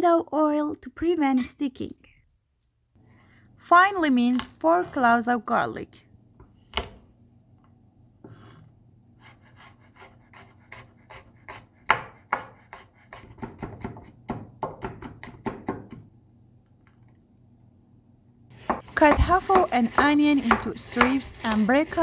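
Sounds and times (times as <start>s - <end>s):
knife scraping cutting board: 8.3s - 13.4s
knife chopping on cutting board: 9.6s - 16.0s, 18.6s - 21.7s.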